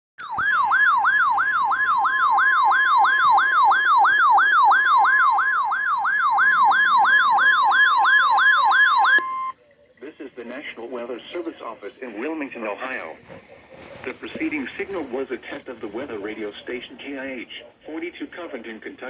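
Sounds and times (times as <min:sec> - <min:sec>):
steady alarm tone: 0:00.2 - 0:09.5
warbling siren: 0:00.2 - 0:09.5.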